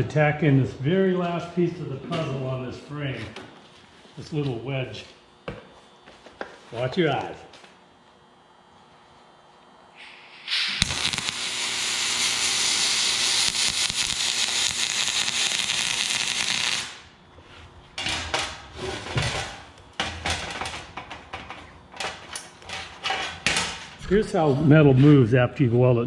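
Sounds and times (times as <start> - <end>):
welding arc crackling: 10.0 - 17.2.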